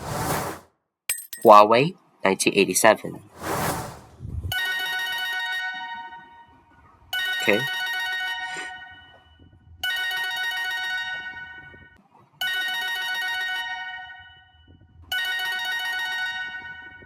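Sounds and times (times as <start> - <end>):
bell-like phone ringtone: 4.5 - 6.5, 7.2 - 17.0.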